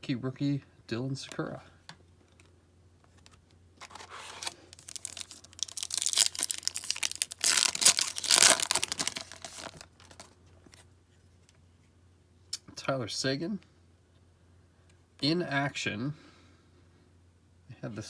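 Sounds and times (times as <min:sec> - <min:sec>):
foil wrapper tearing and crinkling: 0:03.8 - 0:10.4.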